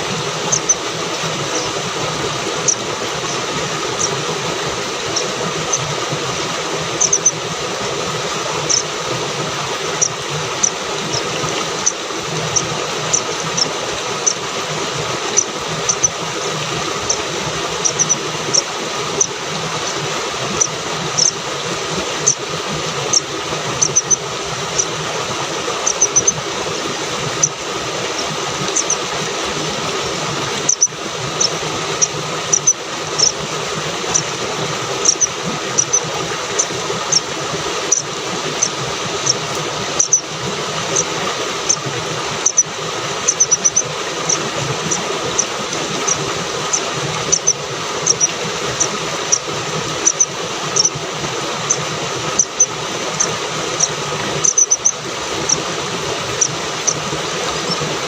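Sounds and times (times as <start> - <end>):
small animal squeaking: 0.4 - 0.9, 1.5 - 1.8, 2.6 - 4.2, 7.0 - 7.4, 8.6 - 8.9, 9.8 - 14.4, 15.3 - 16.2, 16.9 - 21.4, 23.1 - 25.0, 25.8 - 26.8, 27.4 - 29.1, 30.6 - 33.4, 34.0 - 34.4, 35.0 - 37.3, 37.9 - 40.3, 40.9 - 42.7, 43.3 - 51.0, 51.7 - 57.9.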